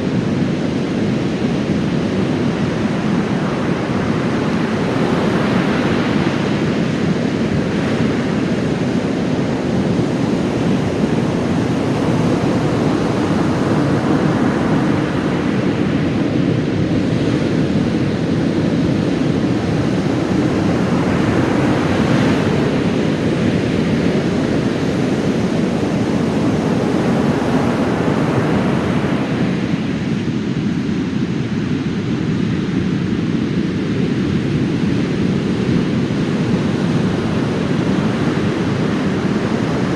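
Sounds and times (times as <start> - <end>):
waves crashing on beach: 0.0 - 39.9.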